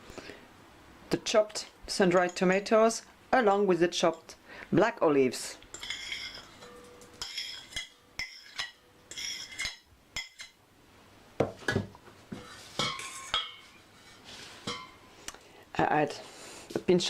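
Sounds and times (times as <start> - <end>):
cutlery clinking against a dish: 5.7 - 10.6, 12.4 - 13.8, 14.6 - 15.0.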